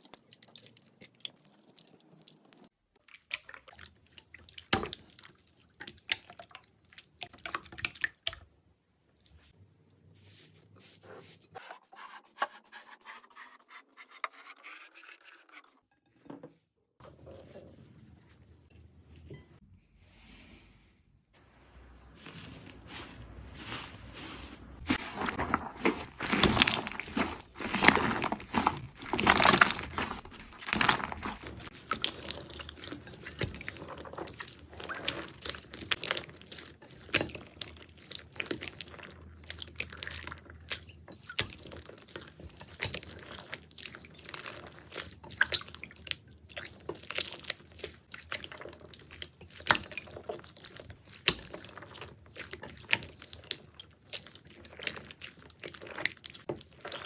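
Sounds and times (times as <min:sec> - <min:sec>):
slime squishing by hand: 0:22.0 - 0:57.0.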